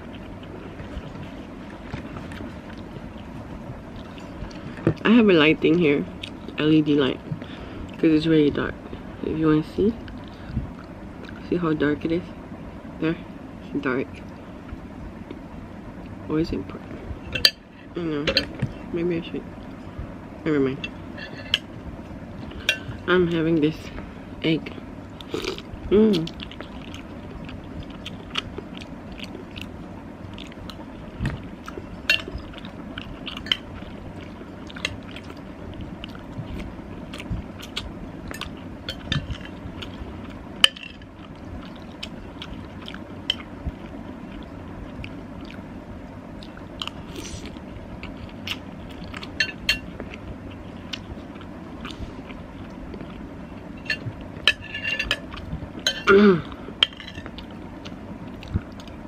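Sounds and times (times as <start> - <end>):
person chewing: 0.0 - 5.0, 24.7 - 45.6, 46.3 - 59.0
steady low hiss: 0.0 - 59.0.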